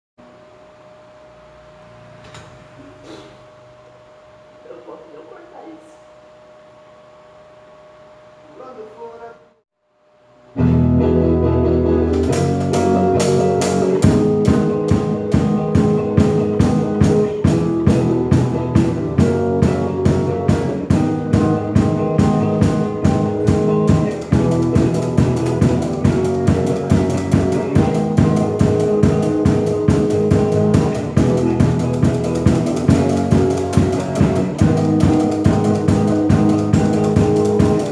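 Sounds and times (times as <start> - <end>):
band music with bass and guitar: 10.5 - 37.9
drum kit beat with cymbals: 12.0 - 37.9.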